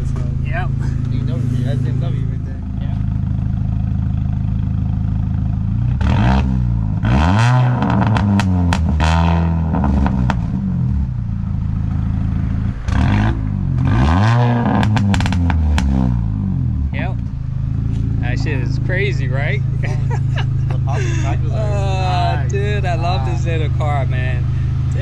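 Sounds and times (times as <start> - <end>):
exhaust crackles and pops: 0.0 - 19.7
car engine revving: 0.0 - 25.0.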